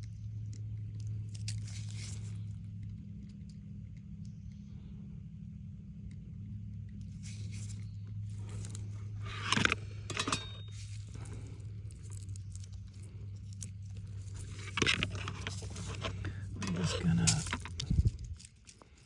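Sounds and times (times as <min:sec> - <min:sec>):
steady low hum: 0:00.0 - 0:19.0
tools and wire scraping: 0:01.3 - 0:02.6, 0:07.1 - 0:19.0.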